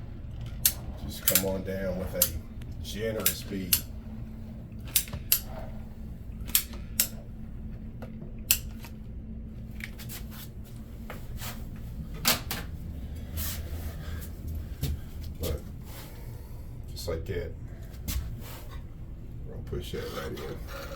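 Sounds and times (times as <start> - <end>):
steady low hum: 0.0 - 20.9.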